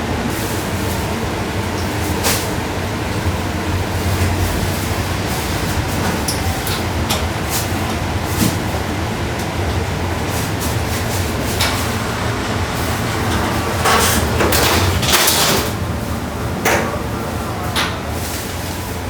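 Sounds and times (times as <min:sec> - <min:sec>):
metal utensils scraping and clattering: 0:10.3 - 0:15.9.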